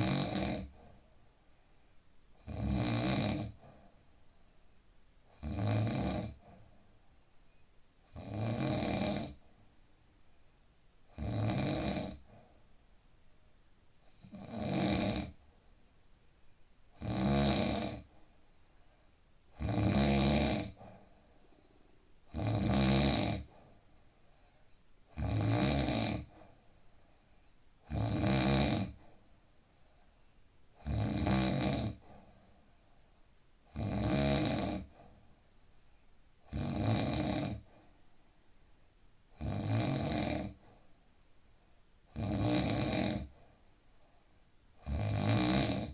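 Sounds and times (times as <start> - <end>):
man snoring: 0.0 - 0.8, 2.4 - 3.6, 5.3 - 6.4, 8.1 - 9.4, 11.2 - 12.2, 14.2 - 15.4, 17.0 - 18.1, 19.6 - 20.8, 22.3 - 23.5, 25.2 - 26.4, 27.9 - 29.0, 30.8 - 32.0, 33.7 - 34.9, 36.5 - 37.6, 39.4 - 40.6, 42.1 - 43.4, 44.8 - 45.9
quiet breathing: 0.0 - 45.9.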